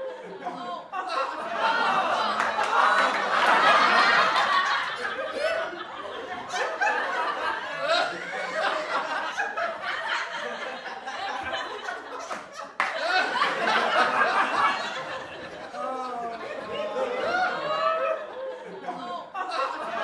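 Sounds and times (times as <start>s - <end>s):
group of people laughing: 0.0s - 20.0s
people talking: 13.2s - 20.0s.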